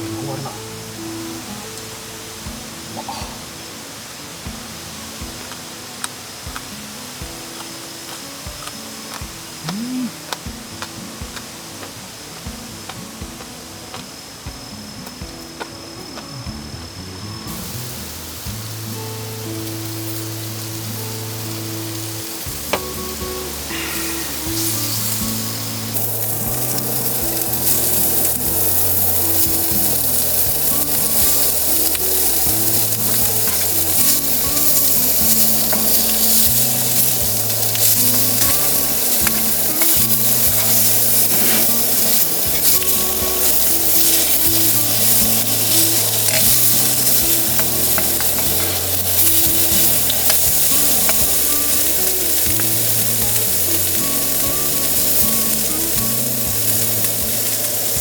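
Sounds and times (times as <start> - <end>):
background music with bass: 0.0 - 58.0
chicken sizzling in a pan: 17.0 - 58.0.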